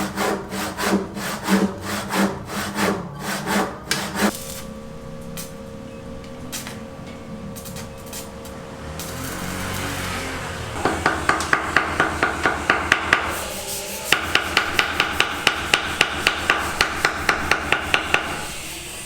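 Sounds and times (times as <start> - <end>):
rapid hammer blows: 9.0 - 18.5.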